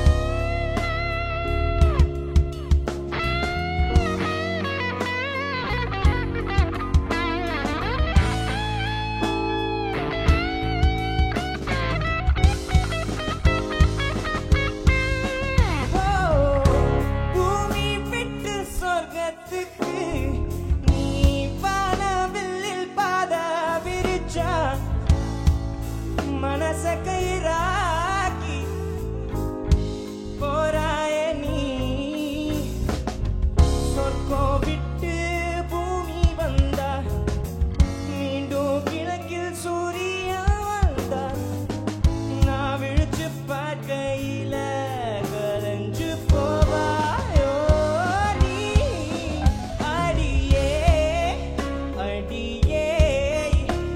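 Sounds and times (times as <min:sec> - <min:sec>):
steady drum beat: 0:00.0 - 0:23.0, 0:24.0 - 0:31.0, 0:32.2 - 0:43.9, 0:44.9 - 0:53.9
band accompaniment: 0:00.0 - 0:53.9
man singing: 0:14.8 - 0:29.4, 0:30.2 - 0:53.9.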